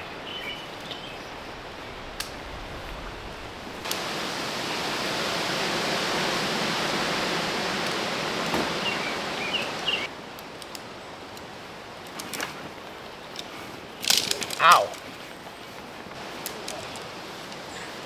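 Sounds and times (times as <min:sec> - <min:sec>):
steady rushing noise: 0:01.2 - 0:10.1.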